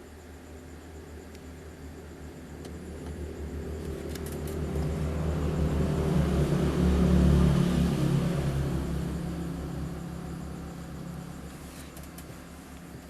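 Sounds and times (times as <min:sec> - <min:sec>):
steady low hum: 0:00.0 - 0:13.0
vehicle passing by: 0:03.4 - 0:11.6.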